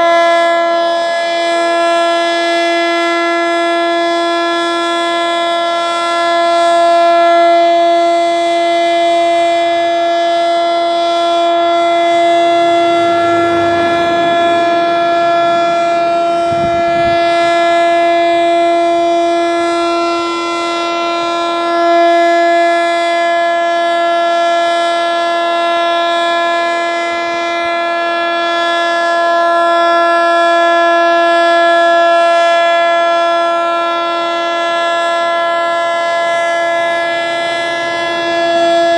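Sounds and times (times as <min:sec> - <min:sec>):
rotating siren tone: 0:00.0 - 0:33.0, 0:34.5 - 0:38.9
brief rushing noise: 0:12.1 - 0:18.2.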